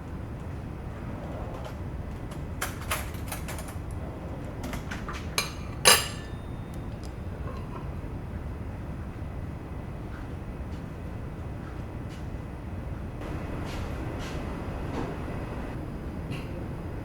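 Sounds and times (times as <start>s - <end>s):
dishes and cutlery clinking: 4.7s - 7.7s.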